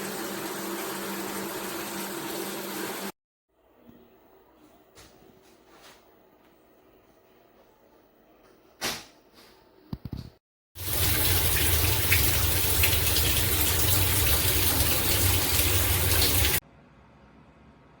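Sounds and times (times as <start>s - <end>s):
shower water spraying: 10.8s - 16.6s.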